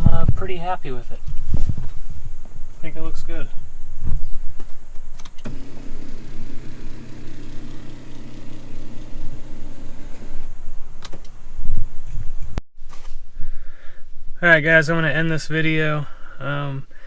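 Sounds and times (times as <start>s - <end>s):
small electric motor humming: 5.4s - 11.0s.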